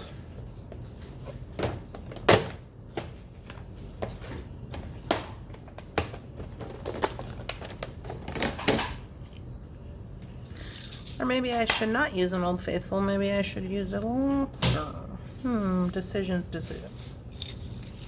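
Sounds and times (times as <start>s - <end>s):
rummaging small metal parts clicks: 6.6s - 8.9s, 10.5s - 11.3s, 16.9s - 18.0s.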